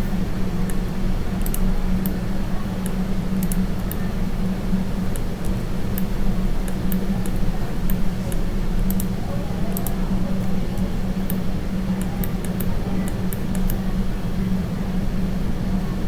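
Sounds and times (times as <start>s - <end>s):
low electrical hum: 0.0s - 16.0s
mouse and keyboard clicks: 1.4s - 2.2s, 5.1s - 10.0s.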